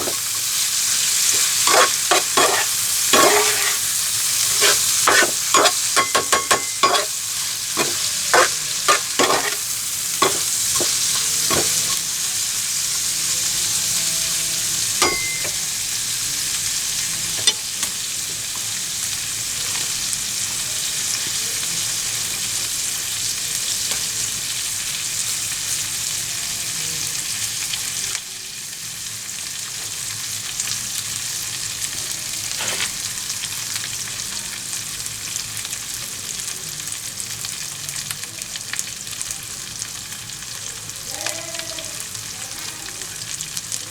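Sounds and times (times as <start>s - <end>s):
food sizzling in a pan: 0.0s - 43.9s
utensil clinking against pan: 1.7s - 3.8s, 4.5s - 7.2s, 7.8s - 9.6s, 10.2s - 12.0s, 15.0s - 15.8s.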